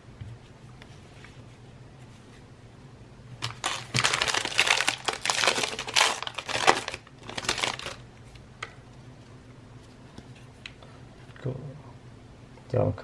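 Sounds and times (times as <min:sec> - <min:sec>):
plastic wrapper crinkling: 0:03.4 - 0:08.0.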